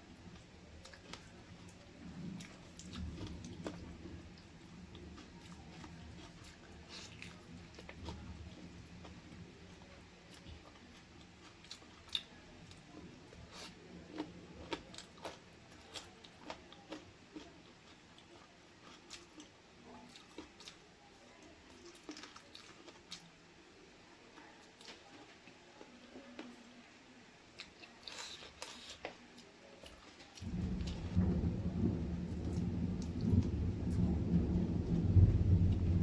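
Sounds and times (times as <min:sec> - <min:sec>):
wet chewing: 0:09.8 - 0:23.3.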